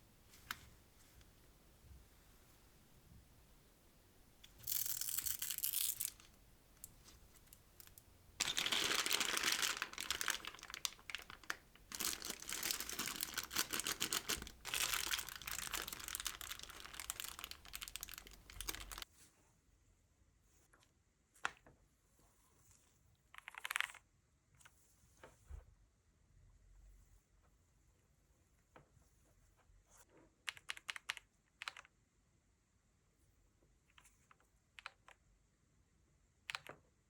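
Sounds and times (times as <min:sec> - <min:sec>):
packaging crinkling and tearing: 0:04.5 - 0:19.0.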